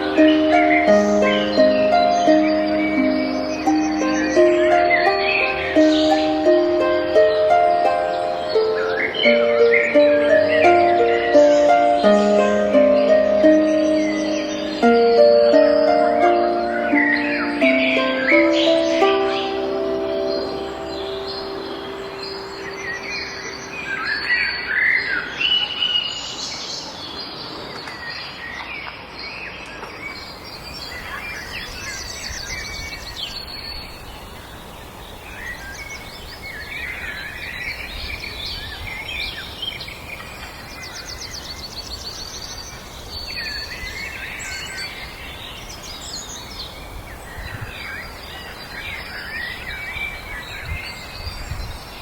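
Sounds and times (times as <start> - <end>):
held musical chord: 0.0 - 25.2
outdoor ambient hiss: 0.0 - 52.0
wild birds singing: 0.0 - 52.0.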